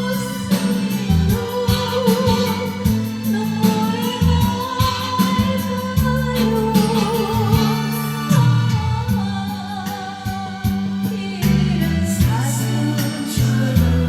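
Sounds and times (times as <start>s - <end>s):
song with singing over a beat: 0.0s - 14.0s.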